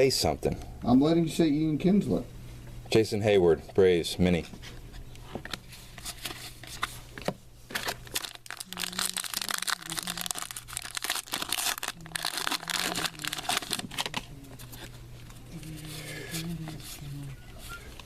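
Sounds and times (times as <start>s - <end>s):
foil wrapper crinkling and tearing: 7.7s - 14.9s.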